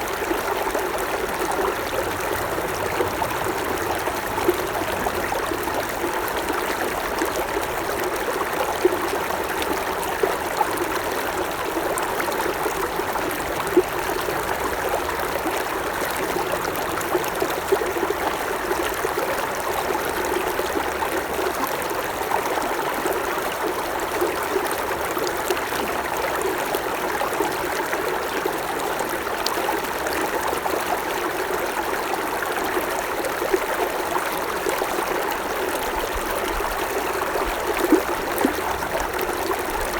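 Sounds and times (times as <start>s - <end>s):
creek water babbling over stones: 0.0s - 39.9s
small water splashes: 33.2s - 39.9s.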